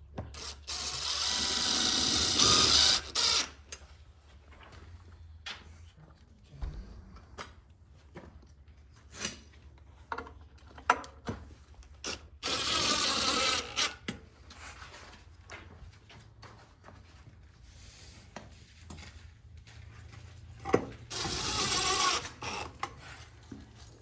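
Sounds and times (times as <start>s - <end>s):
power screwdriver driving screw: 0.2s - 3.8s, 12.0s - 14.1s, 21.1s - 23.0s
clicks and knocks of tools: 9.2s - 12.3s.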